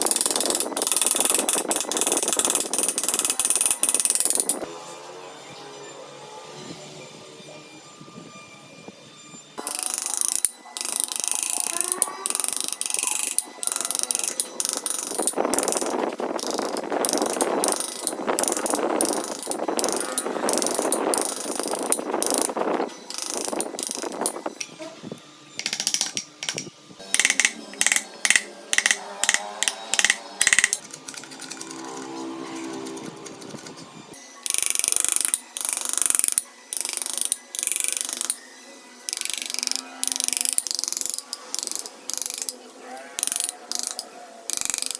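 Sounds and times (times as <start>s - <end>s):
carving tools scraping wood: 0.0s - 4.6s, 9.6s - 24.4s, 25.6s - 33.7s, 39.1s - 42.6s, 43.2s - 44.9s
sharp carving strokes: 9.6s - 24.4s, 25.6s - 33.6s.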